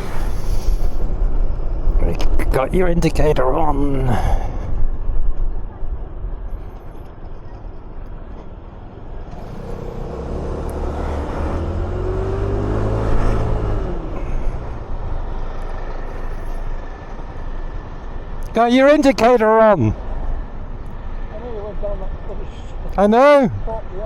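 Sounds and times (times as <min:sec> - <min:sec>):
wind noise: 0:00.0 - 0:02.9.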